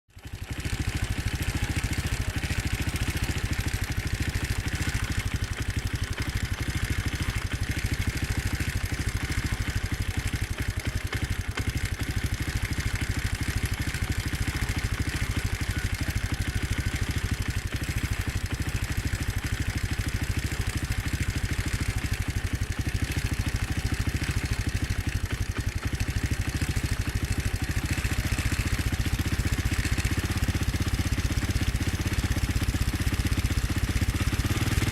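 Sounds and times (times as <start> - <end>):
motorcycle engine running steadily: 0.1 - 34.9.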